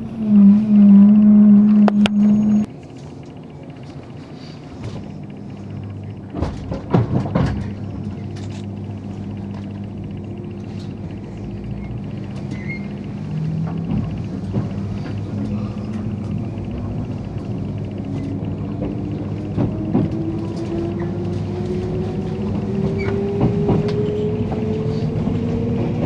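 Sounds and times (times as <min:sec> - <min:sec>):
loud low hum: 0:00.0 - 0:26.0
train low rumble: 0:00.0 - 0:26.0
wheels clacking: 0:00.0 - 0:26.0.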